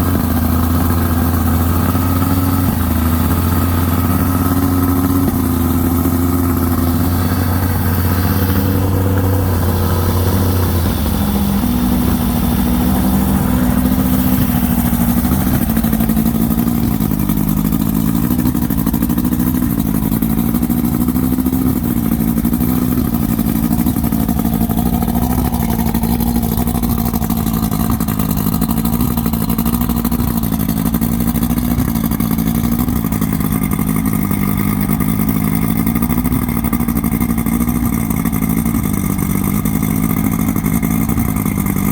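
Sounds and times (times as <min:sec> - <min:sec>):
engine running: 0:00.0 - 0:41.9.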